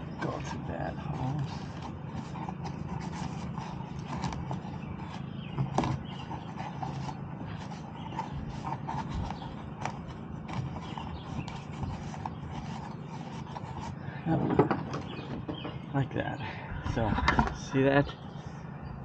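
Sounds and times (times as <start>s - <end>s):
strap webbing scraping: 0.0s - 14.2s.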